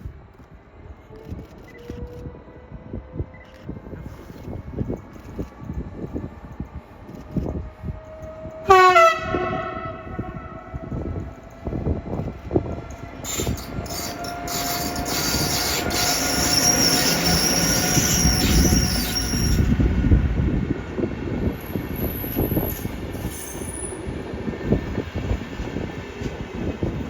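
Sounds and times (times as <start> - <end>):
train rumbling past: 0.0 - 27.0
train wheels squealing: 13.0 - 19.9, 21.6 - 24.6.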